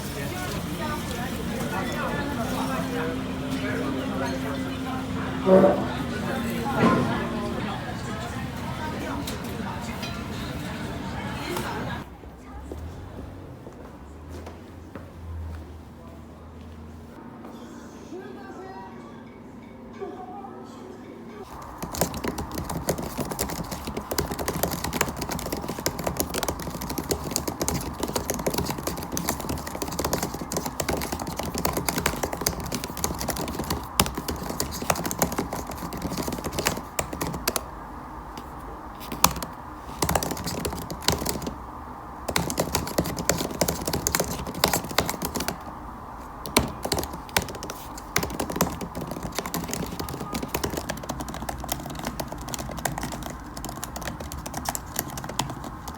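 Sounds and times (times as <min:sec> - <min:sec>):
laptop keyboard typing: 0:21.5 - 0:37.7, 0:39.0 - 0:55.9.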